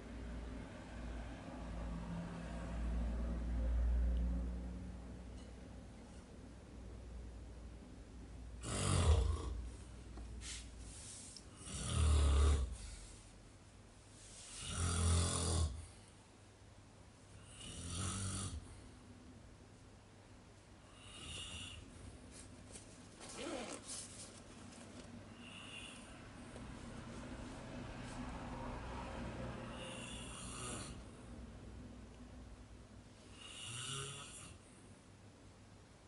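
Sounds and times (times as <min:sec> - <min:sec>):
person snoring: 0:08.6 - 0:09.7, 0:11.5 - 0:13.0, 0:14.5 - 0:15.9, 0:17.4 - 0:18.7, 0:20.9 - 0:21.9, 0:25.3 - 0:26.2, 0:29.6 - 0:31.2, 0:33.3 - 0:34.6.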